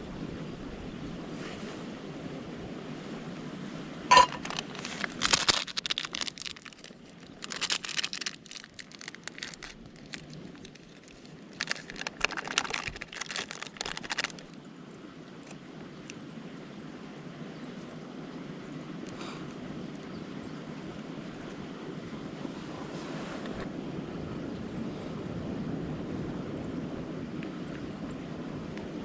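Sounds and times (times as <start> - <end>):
sharp ringing clink: 4.1 - 4.5
material crinkling and rustling: 4.1 - 14.6.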